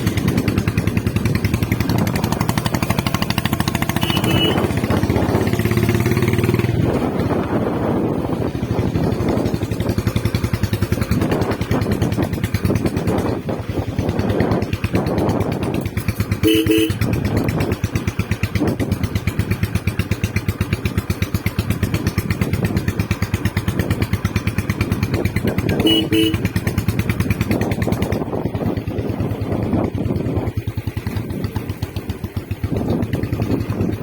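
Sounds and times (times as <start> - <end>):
motorcycle engine idling: 0.0 - 34.0
short horn beeps: 3.9 - 4.8, 16.4 - 17.0, 25.8 - 26.4.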